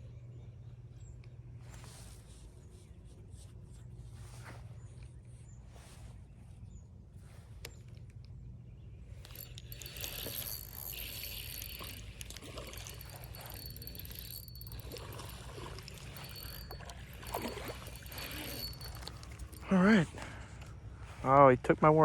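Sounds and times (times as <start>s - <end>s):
water splashing and churning: 9.3s - 20.2s.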